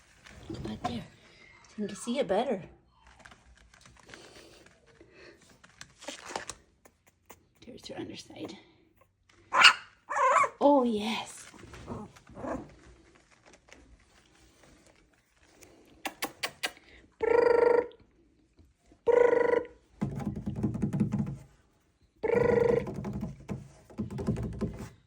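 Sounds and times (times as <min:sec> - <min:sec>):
scratching and rustling: 0:03.0 - 0:07.7, 0:11.1 - 0:16.5, 0:22.7 - 0:25.0
puppy whining cries: 0:09.6 - 0:10.5
quick clicks: 0:16.0 - 0:16.8.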